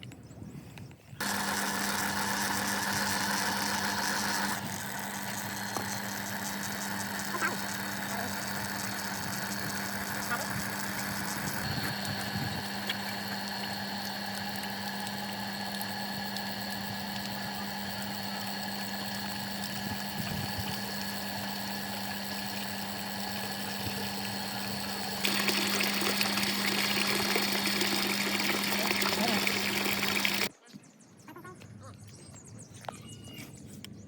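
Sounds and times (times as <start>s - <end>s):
water pump humming: 1.2s - 30.5s
water rushing: 24.4s - 30.5s.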